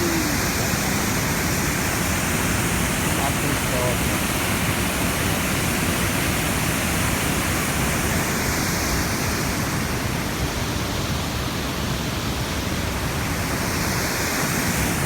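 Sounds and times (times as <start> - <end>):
waterfall rushing: 0.0 - 1.1, 2.3 - 10.0.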